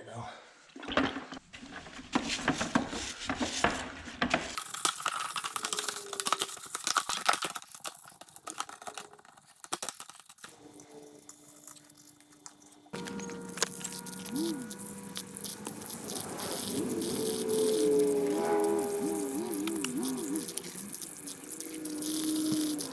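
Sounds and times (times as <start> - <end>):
tool scrubbing and scraping: 8.5 - 22.9.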